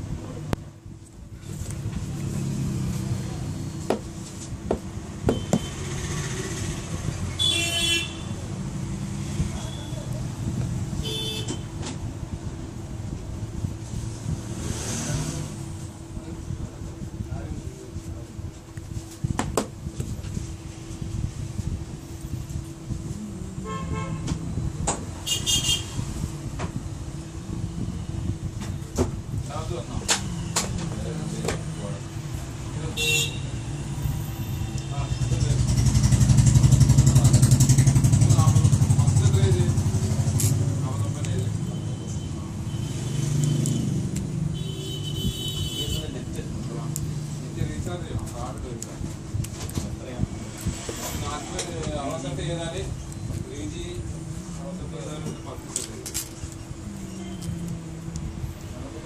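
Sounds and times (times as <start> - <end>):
low traffic rumble: 0.0 - 59.0
car horn toot: 7.4 - 8.4, 11.0 - 11.7, 33.0 - 33.6, 44.5 - 46.2.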